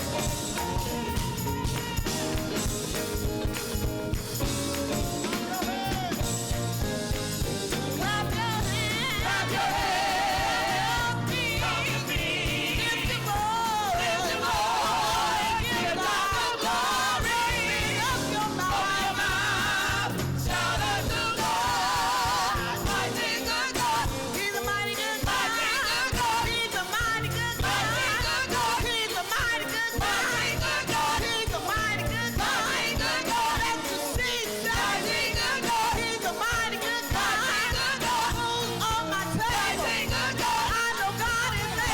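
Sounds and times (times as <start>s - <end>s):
instrumental accompaniment: 0.0s - 41.9s
singing with heavy vibrato: 8.0s - 41.9s.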